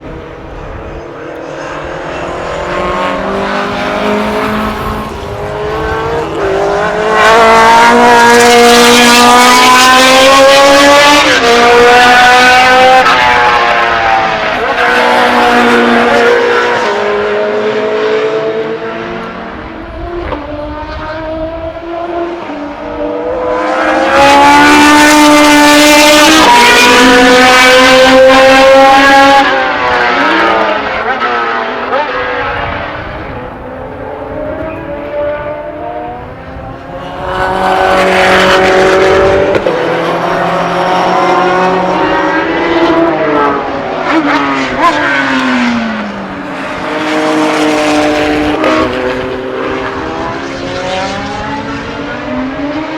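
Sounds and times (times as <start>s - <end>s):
racing car engine revving through gears: 1.2s - 52.9s.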